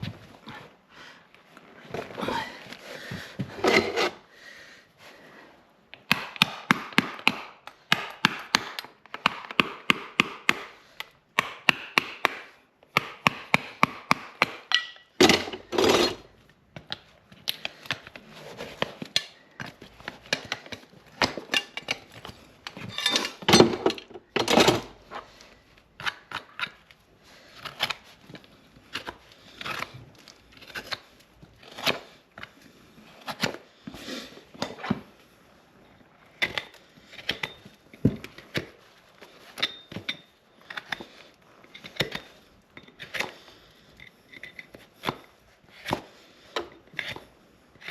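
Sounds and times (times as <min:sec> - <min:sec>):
hand tools scraping a hoof: 0:01.9 - 0:04.3, 0:14.4 - 0:16.4, 0:17.5 - 0:26.8, 0:27.4 - 0:35.4, 0:36.3 - 0:47.9.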